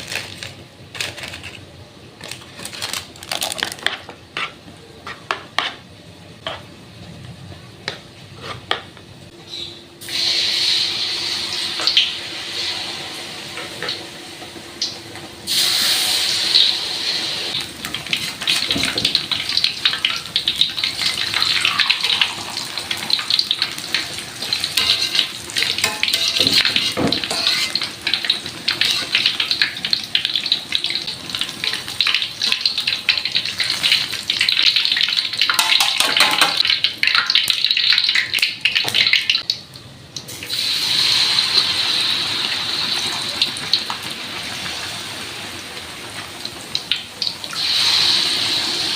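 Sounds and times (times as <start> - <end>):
food deep-frying in oil: 9.5 - 48.9.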